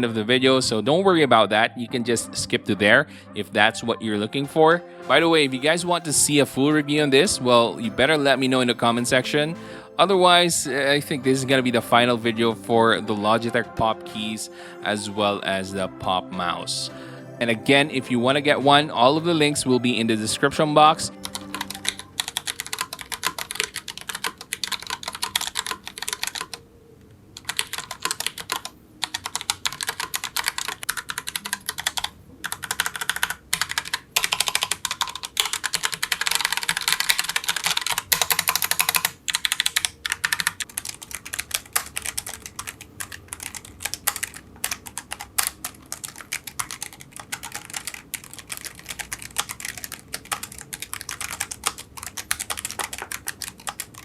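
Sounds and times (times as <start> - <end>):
mechanical keyboard typing: 21.1 - 26.6, 27.4 - 54.0.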